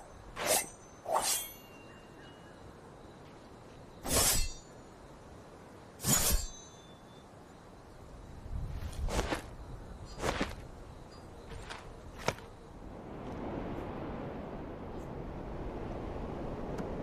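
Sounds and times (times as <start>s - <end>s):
sword swishing: 0.3s - 1.6s, 4.0s - 4.6s, 6.0s - 6.6s
faint metallic ring: 6.0s - 7.3s.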